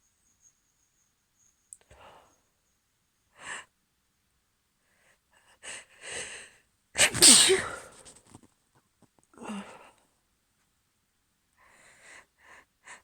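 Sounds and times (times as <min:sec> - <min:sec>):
woman sneezing: 0:07.0 - 0:07.9.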